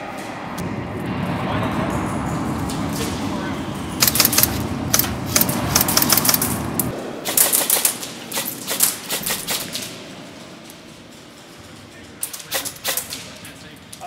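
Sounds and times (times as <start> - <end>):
low rumble: 0.0 - 14.0
airsoft guns firing: 4.0 - 10.0, 12.2 - 13.3.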